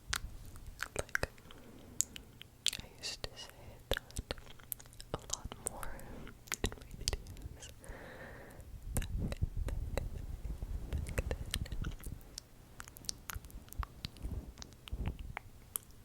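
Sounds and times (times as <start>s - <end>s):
wet mouth clicks and smacks: 0.1s - 7.8s, 8.9s - 10.2s, 10.9s - 16.0s
soft breath: 1.3s - 2.4s, 5.6s - 6.4s, 7.1s - 8.8s.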